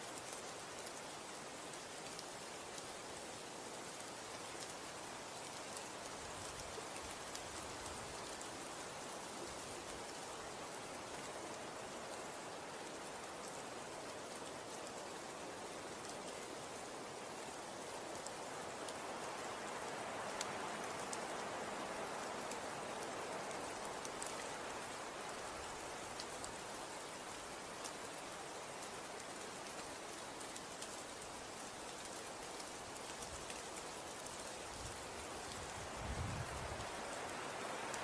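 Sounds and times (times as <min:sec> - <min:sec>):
light ticks of sleet: 0:00.0 - 0:38.0.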